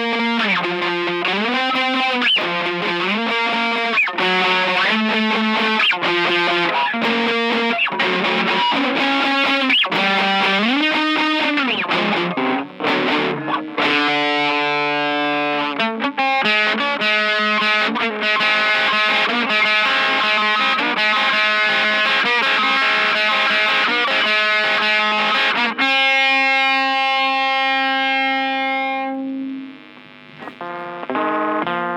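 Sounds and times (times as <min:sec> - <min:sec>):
distorted electric guitar lead: 0:00.0 - 0:31.9.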